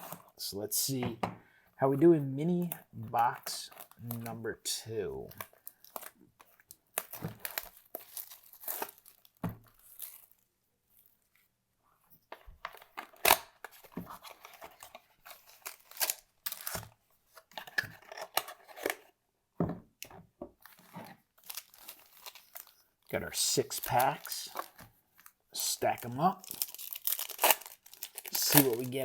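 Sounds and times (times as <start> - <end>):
packaging tearing and crinkling: 6.9 - 10.4, 13.0 - 16.9, 20.7 - 22.8, 23.7 - 29.0.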